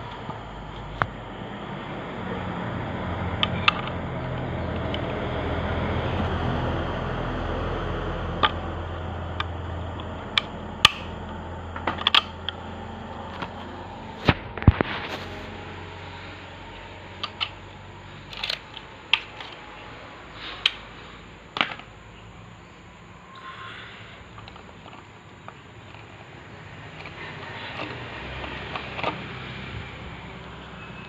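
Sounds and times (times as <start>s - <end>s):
steady low hum: 0.0s - 31.0s
tools clicking and knocking: 9.4s - 11.2s, 11.8s - 12.6s, 18.3s - 19.6s.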